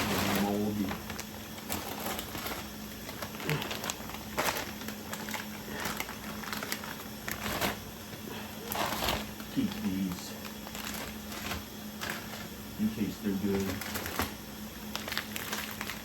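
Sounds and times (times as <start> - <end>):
faint steady hum: 0.0 - 16.0
plastic packaging crinkling: 0.0 - 16.0.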